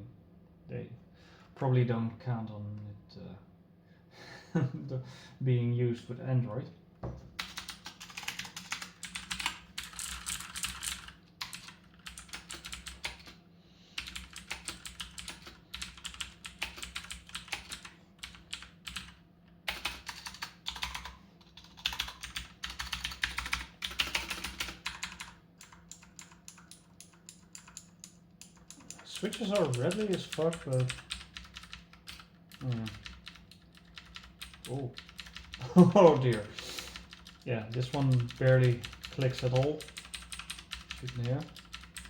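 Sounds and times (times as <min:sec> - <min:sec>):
mechanical keyboard typing: 0:07.4 - 0:13.4, 0:14.0 - 0:42.0.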